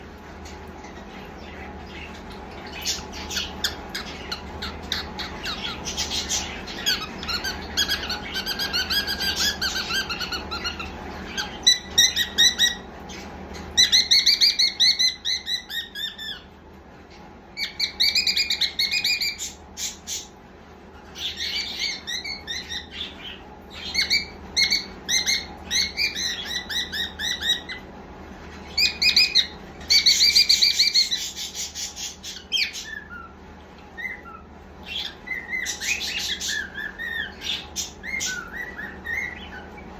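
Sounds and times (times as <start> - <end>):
cockatiel chattering and warbling: 2.0 - 16.4.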